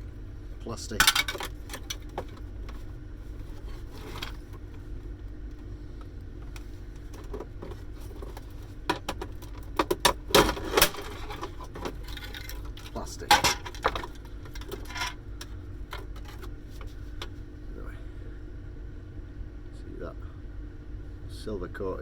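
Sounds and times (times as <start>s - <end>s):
steady low hum: 0.0s - 22.0s
plastic parts clicking and rattling: 7.0s - 16.5s.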